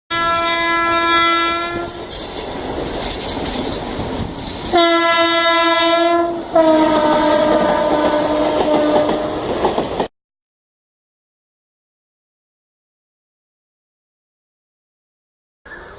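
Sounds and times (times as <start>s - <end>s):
locomotive air horn: 0.1s - 2.0s, 4.7s - 9.4s
train rumbling on rails: 0.1s - 10.1s.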